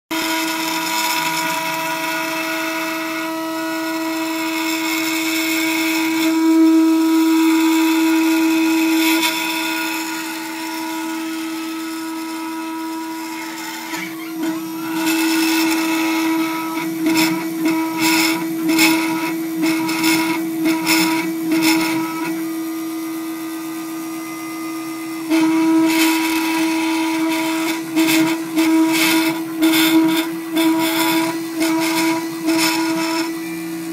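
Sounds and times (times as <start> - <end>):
engraving machine motor whine: 0.1 - 33.9.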